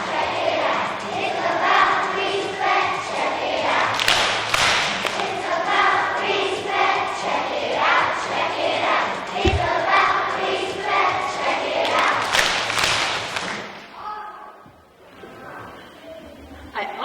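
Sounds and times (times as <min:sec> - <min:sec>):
children singing in echoing hall: 0:00.0 - 0:14.0
noisy thump: 0:09.4 - 0:10.3.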